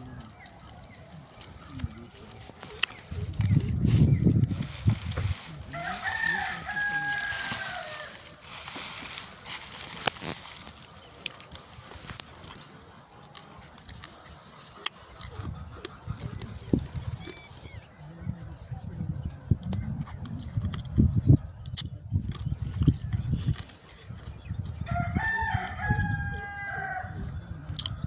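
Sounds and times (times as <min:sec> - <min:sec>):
rooster crowing: 0:05.6 - 0:08.8, 0:24.9 - 0:27.2.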